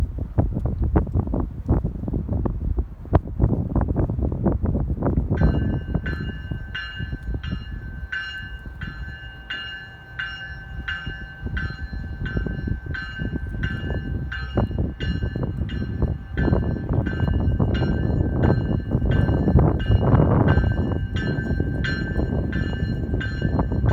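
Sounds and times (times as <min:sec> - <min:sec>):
low train rumble: 0:00.0 - 0:23.9
wind noise: 0:00.0 - 0:23.9
railway bell ringing: 0:05.3 - 0:23.9.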